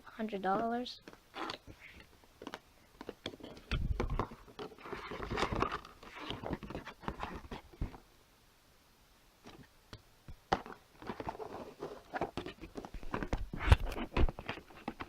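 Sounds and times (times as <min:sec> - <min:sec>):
cardboard packaging rustling: 0:00.6 - 0:08.0, 0:10.5 - 0:15.0.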